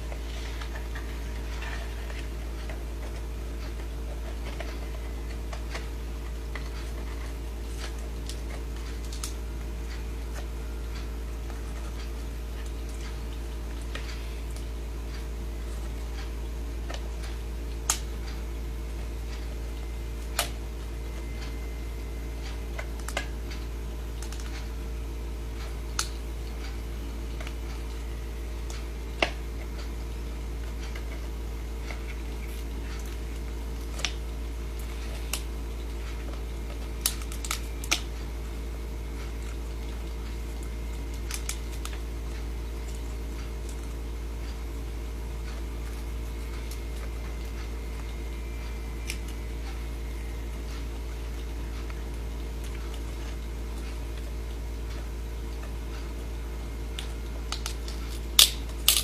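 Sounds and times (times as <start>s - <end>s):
steady low hum: 0.0s - 59.0s
crab claws clicking: 57.0s - 59.0s.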